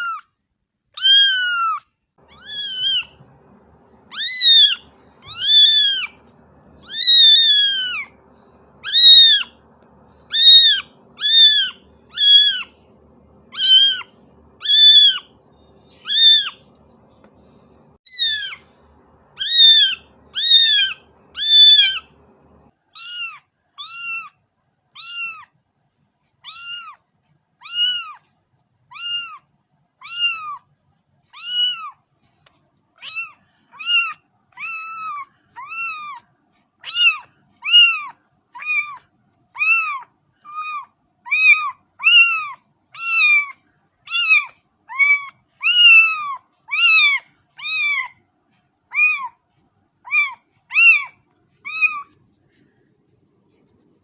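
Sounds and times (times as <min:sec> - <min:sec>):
cat meowing: 0:01.0 - 0:12.8, 0:13.4 - 0:16.8, 0:17.7 - 0:24.3, 0:25.0 - 0:25.5, 0:26.4 - 0:27.0, 0:27.6 - 0:28.2, 0:28.9 - 0:29.4, 0:30.0 - 0:30.6, 0:31.4 - 0:32.0, 0:33.0 - 0:36.2, 0:36.8 - 0:39.0, 0:39.6 - 0:48.2, 0:48.9 - 0:49.3, 0:50.1 - 0:52.2.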